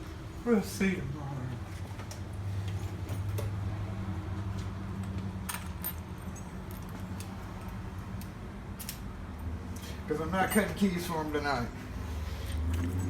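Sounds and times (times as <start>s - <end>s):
keys and lock cylinders clinking: 5.5s - 7.8s.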